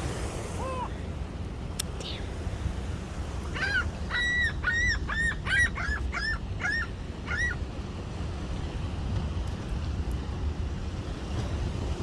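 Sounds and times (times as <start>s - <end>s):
gull calling: 0.6s - 1.0s, 3.5s - 7.6s.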